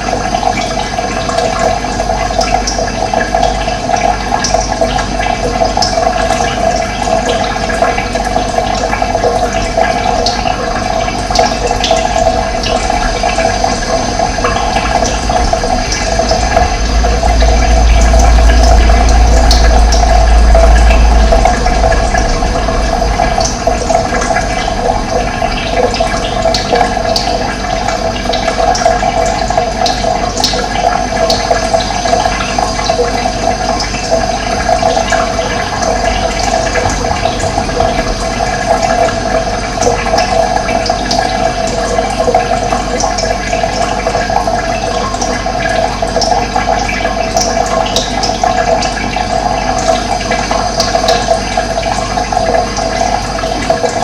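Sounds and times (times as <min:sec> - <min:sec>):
running water: 0:00.0 - 0:54.0.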